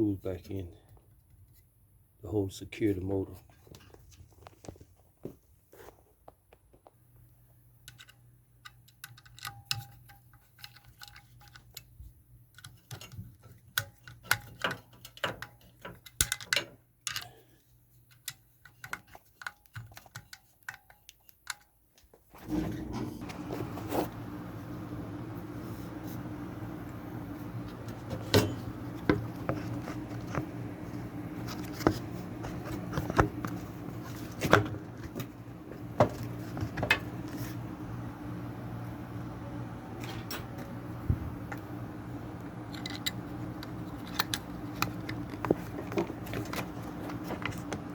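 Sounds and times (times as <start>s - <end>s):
clicks and taps of metal parts: 7.8s - 11.9s, 12.5s - 17.5s, 18.1s - 22.1s
steady low hum: 22.4s - 47.9s.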